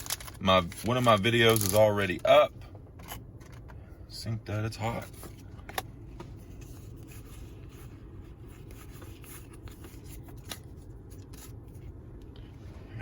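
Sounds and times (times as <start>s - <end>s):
trading cards rustling: 0.0s - 2.2s, 4.9s - 12.0s.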